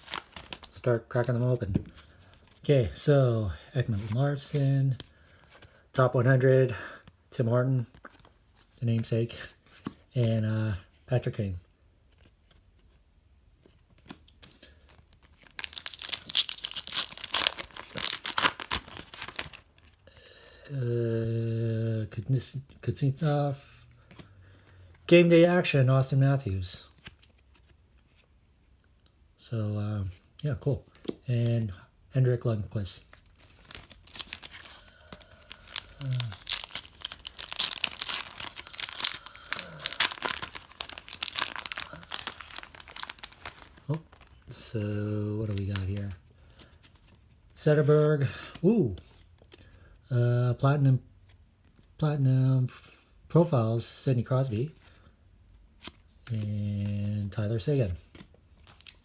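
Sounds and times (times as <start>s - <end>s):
card pack wrapper tearing: 0.0s - 0.8s, 14.9s - 19.9s, 33.4s - 46.2s.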